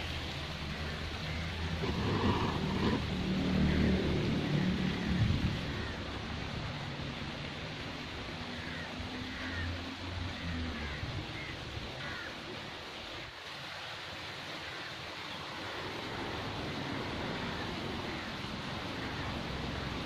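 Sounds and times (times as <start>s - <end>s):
wind on microphone: 1.7s - 6.7s.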